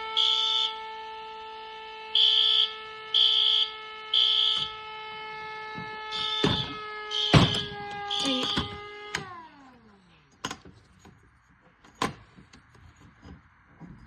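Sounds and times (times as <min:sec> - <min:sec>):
electronic alarm tone: 0:00.0 - 0:09.2
fire alarm horn beeping: 0:00.0 - 0:09.3
sharp knocks: 0:05.8 - 0:07.8.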